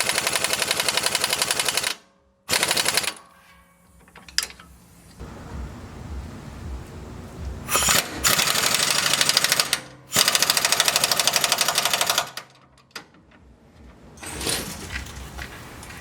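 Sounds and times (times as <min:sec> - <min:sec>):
pneumatic impact wrench hammering: 0:00.0 - 0:04.6, 0:07.6 - 0:12.6.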